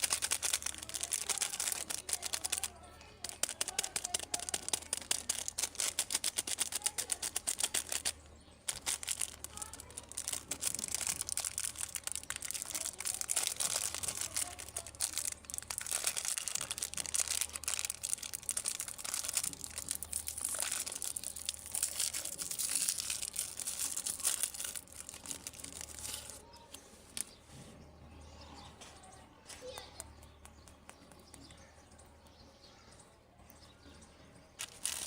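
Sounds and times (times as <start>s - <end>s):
plastic packaging crinkling: 0.0s - 26.5s, 34.6s - 35.0s.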